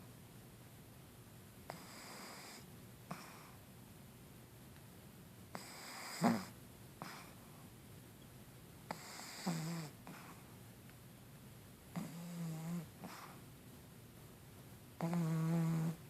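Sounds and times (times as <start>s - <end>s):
dog snoring: 1.7s - 3.6s, 5.5s - 7.4s, 8.9s - 10.4s, 11.9s - 13.4s, 15.0s - 16.0s.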